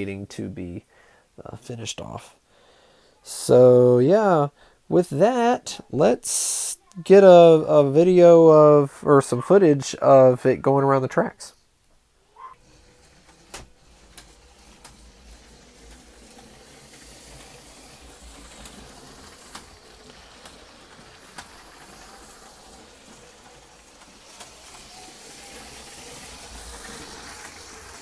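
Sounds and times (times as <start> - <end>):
toy train motor whirring: 12.4 - 28.0.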